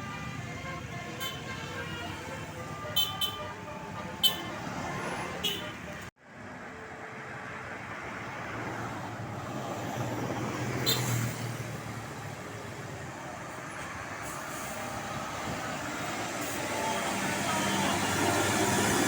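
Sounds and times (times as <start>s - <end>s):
heavy vehicle engine rumbling: 0.0s - 6.2s, 9.1s - 19.0s
road traffic passing: 0.0s - 19.0s.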